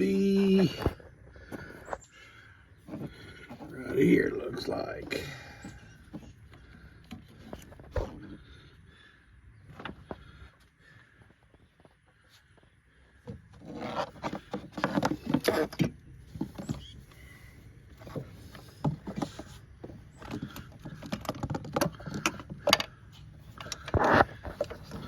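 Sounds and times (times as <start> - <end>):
hose coupler clicks and rattles: 20.2 - 25.0.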